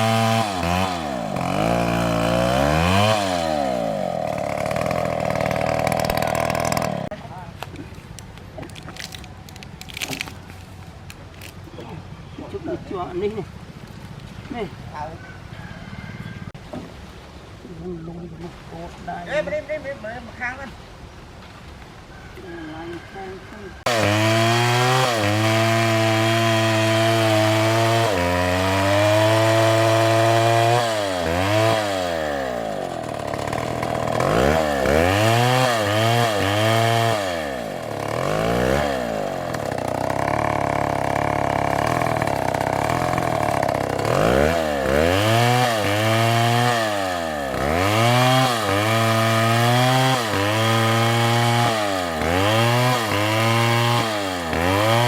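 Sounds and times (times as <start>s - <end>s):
chainsaw engine revving: 0.0s - 7.2s, 23.8s - 55.0s.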